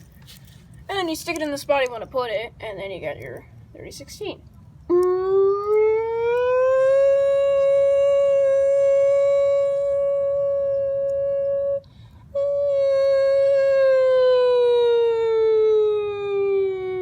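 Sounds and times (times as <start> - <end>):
boy imitating siren wail: 4.9 - 17.0.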